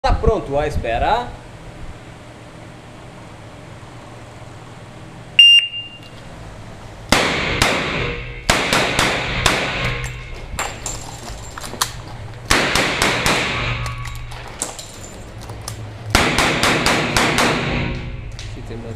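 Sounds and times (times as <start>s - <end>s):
shot timer beep: 5.4s - 6.1s.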